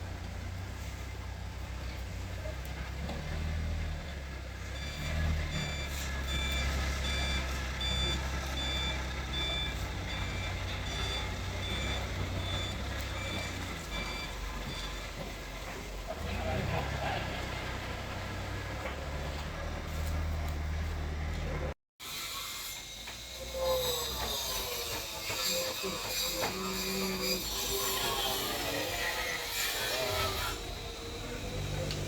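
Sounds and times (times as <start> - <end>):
forklift engine droning: 0.0 - 21.8, 23.0 - 32.0
reversing alarm beeps: 4.7 - 16.0.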